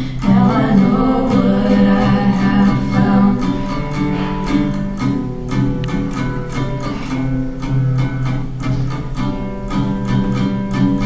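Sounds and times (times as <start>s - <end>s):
person singing: 0.0s - 4.3s
strummed string instrument: 0.0s - 11.0s.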